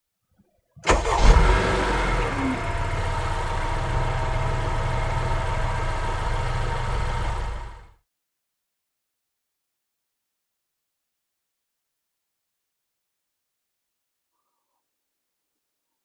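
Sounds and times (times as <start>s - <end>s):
engine running: 0.8s - 8.0s.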